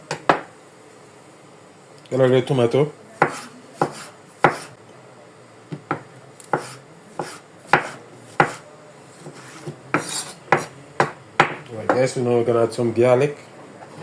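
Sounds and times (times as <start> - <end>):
knife chopping on cutting board: 3.2 - 4.7, 5.8 - 8.6, 9.2 - 12.1.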